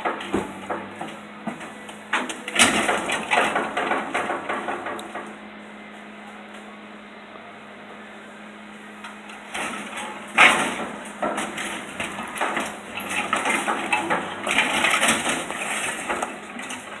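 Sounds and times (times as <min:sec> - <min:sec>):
metal crunching and cracking: 0:00.0 - 0:05.3, 0:09.5 - 0:17.0.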